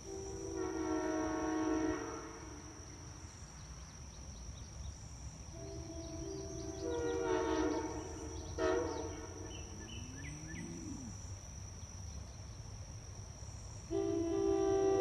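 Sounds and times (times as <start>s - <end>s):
train horn blasts: 0.0s - 2.8s, 5.5s - 9.7s, 13.9s - 15.0s
faint bird chirps: 7.6s - 11.4s
faint steady high tone: 9.3s - 11.3s.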